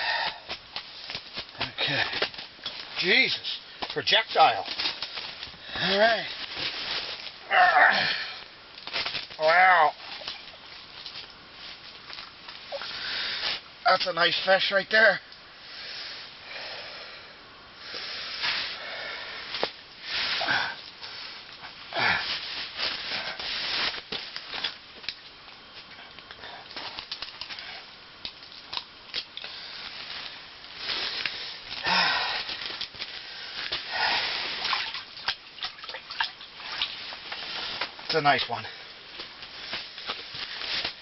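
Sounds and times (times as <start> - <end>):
handling rustling and scraping: 0.5 - 7.4, 19.5 - 25.9, 32.4 - 41.0.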